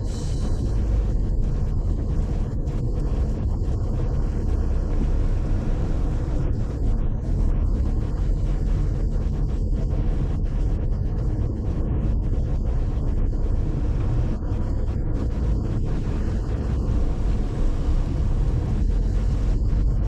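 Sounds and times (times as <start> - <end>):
car engine rumble: 0.0 - 20.0.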